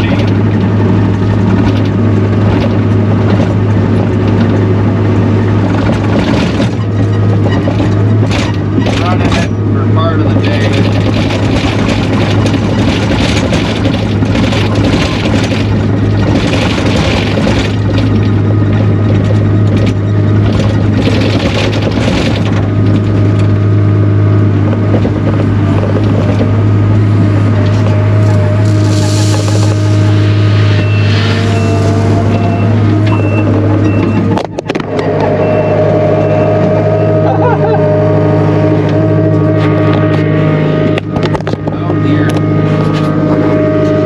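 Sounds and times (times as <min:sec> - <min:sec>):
skid steer engine droning: 0:00.0 - 0:44.0
backup alarm beeping: 0:30.4 - 0:34.4, 0:35.0 - 0:37.2.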